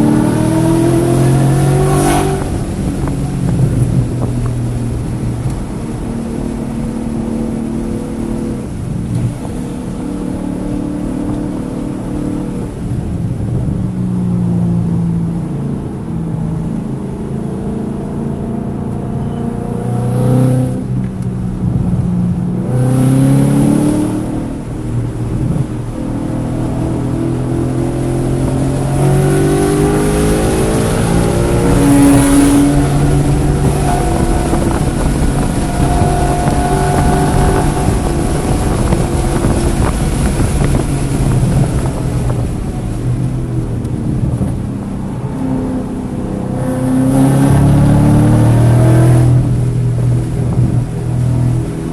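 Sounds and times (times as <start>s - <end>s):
race car engine revving: 0.0s - 13.8s, 15.4s - 51.9s.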